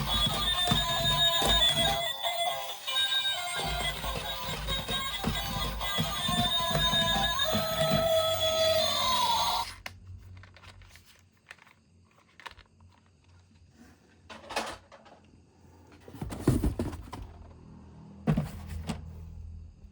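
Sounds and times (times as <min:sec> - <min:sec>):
objects clattering: 0:00.0 - 0:02.0, 0:03.4 - 0:09.2, 0:16.0 - 0:17.4, 0:18.3 - 0:19.1
small objects clicking and rustling: 0:10.4 - 0:13.3.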